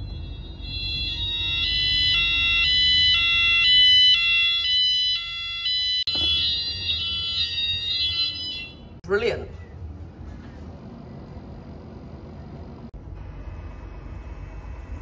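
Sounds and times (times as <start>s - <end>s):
two-tone fire alarm: 0.0s - 9.0s.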